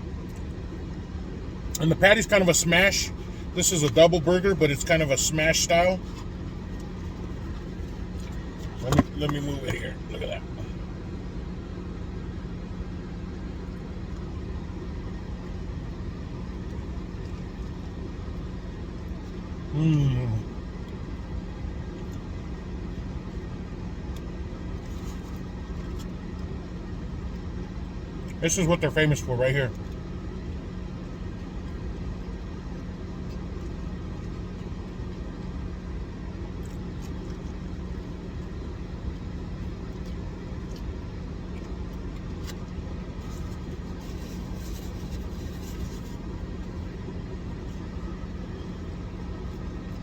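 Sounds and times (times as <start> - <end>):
low rumble with hum: 0.0 - 50.0
clicks and rustles of handling food: 21.9 - 28.4, 31.0 - 50.0.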